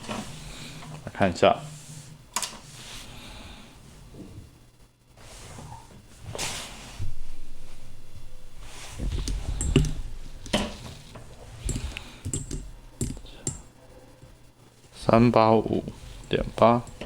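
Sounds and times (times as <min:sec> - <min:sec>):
low rumble: 0:07.0 - 0:10.5.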